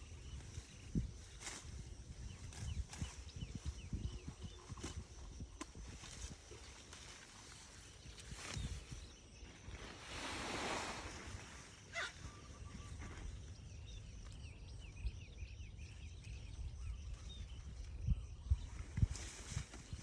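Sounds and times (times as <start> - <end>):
small birds chirping: 0.0 - 9.8, 11.6 - 20.0.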